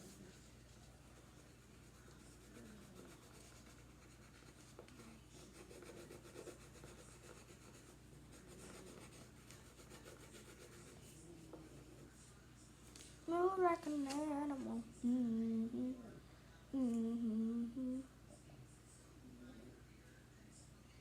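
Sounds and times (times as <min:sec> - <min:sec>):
low steady hum: 0:00.0 - 0:21.0
pen scratching on paper: 0:00.8 - 0:11.8.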